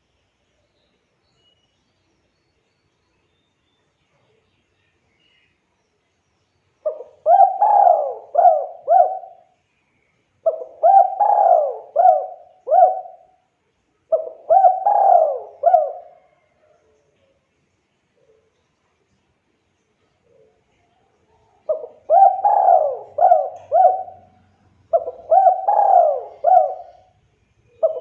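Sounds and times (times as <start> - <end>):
dove cooing: 6.8 - 9.5, 10.4 - 13.4, 14.1 - 16.8, 21.6 - 28.0.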